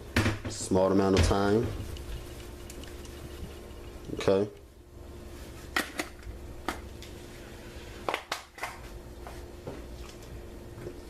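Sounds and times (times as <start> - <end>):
steady low hum: 0.0 - 8.1
seasoning shaking: 1.8 - 4.1.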